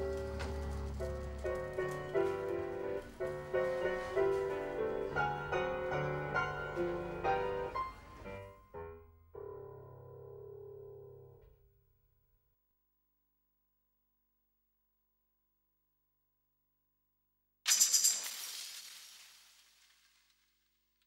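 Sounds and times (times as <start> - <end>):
piano music: 0.0 - 10.6.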